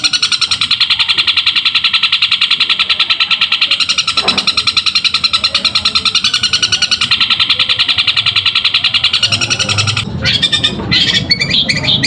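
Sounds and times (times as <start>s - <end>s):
shrike chattering high chirps: 0.0s - 12.0s.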